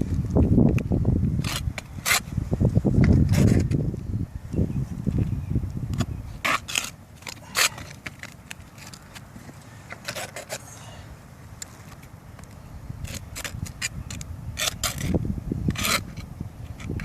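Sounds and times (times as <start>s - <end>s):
scrapes and clicks on roof shingles: 0.1s - 2.4s, 3.0s - 3.8s, 5.9s - 10.7s, 11.6s - 17.0s.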